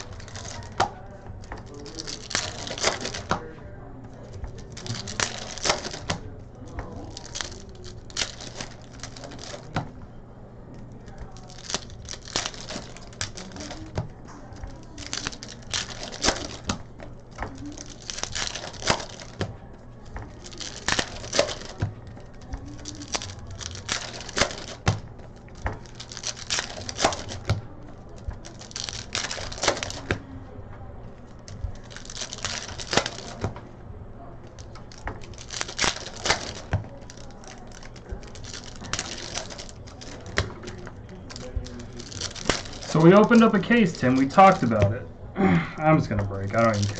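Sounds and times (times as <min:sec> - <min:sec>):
wrapper crinkling and tearing: 0:00.0 - 0:10.0, 0:10.9 - 0:30.4, 0:31.2 - 0:45.1, 0:45.8 - 0:46.9.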